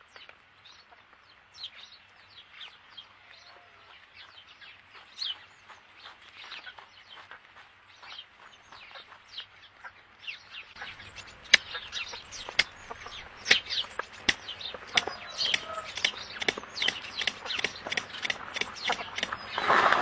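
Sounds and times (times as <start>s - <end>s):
sharp clicks: 10.9s - 19.6s.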